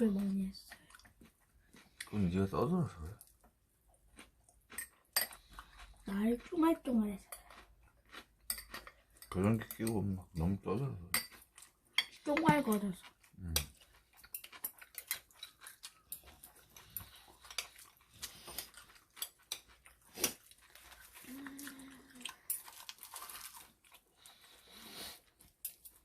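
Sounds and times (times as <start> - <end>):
chewing: 0.1 - 10.6, 11.2 - 26.0
person humming: 21.2 - 22.3.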